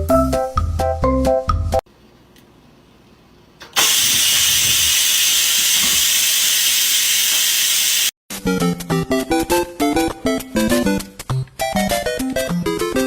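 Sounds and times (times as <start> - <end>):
loud steady hiss: 3.8 - 8.1.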